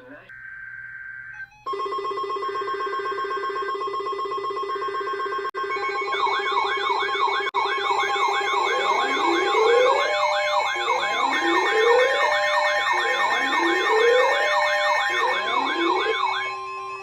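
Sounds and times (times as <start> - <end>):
electronic yelp siren: 0.0 - 17.0
rising alert tone: 5.8 - 17.0.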